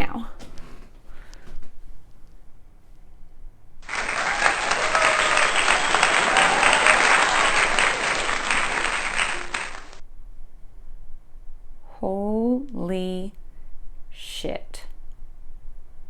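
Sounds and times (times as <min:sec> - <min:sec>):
crowd applause and cheering: 0:03.8 - 0:10.0.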